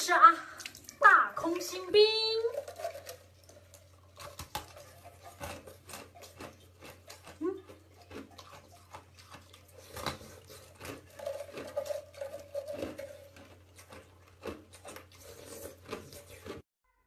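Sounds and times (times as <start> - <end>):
ice being chewed: 0.6 - 16.7.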